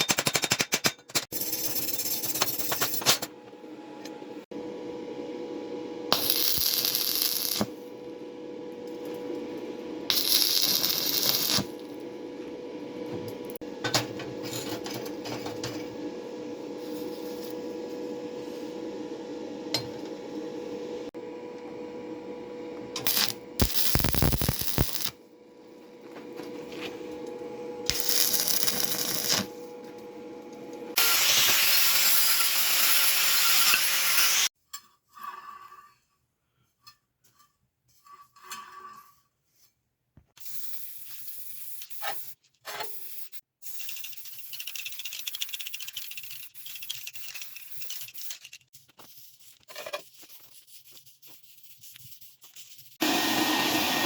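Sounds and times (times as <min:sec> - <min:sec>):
steady hum: 0:03.3 - 0:31.0.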